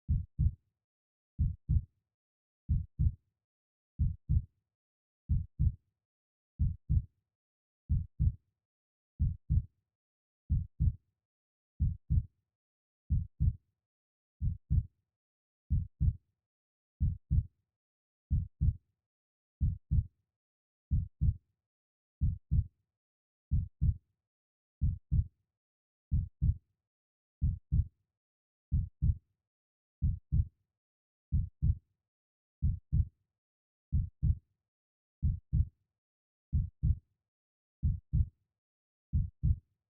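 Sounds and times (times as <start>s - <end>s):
heartbeat: 0.1s - 0.5s, 1.4s - 1.8s, 2.7s - 3.1s, 4.0s - 4.4s, 5.3s - 5.8s, 6.6s - 7.0s, 7.9s - 8.4s, 9.2s - 9.6s, 10.5s - 11.0s, 11.8s - 12.3s, 13.1s - 13.6s, 14.4s - 14.9s, 15.7s - 16.2s, 17.0s - 17.4s, 18.3s - 18.8s, 19.6s - 20.0s, 20.9s - 21.4s, 22.2s - 22.7s, 23.5s - 24.0s, 24.8s - 25.3s, 26.1s - 26.6s, 27.4s - 27.9s, 28.7s - 29.2s, 30.0s - 30.5s, 31.3s - 31.8s, 32.6s - 33.1s, 33.9s - 34.4s, 35.2s - 35.7s, 36.5s - 37.0s, 37.8s - 38.3s, 39.1s - 39.6s.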